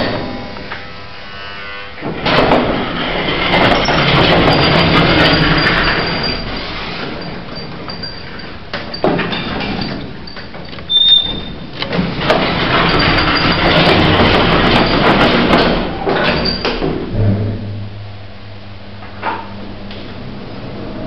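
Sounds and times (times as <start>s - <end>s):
lift machinery rushing: 2.1s - 10.2s, 10.9s - 17.5s.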